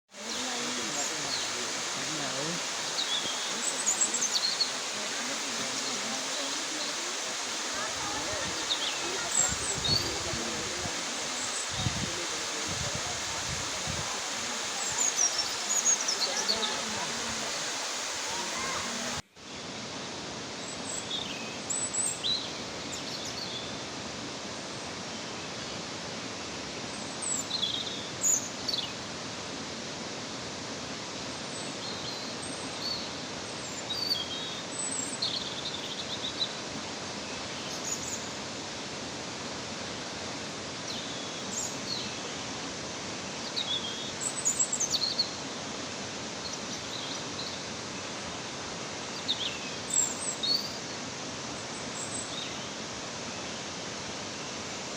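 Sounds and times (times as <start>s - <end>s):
waterfall rushing: 0.1s - 23.1s.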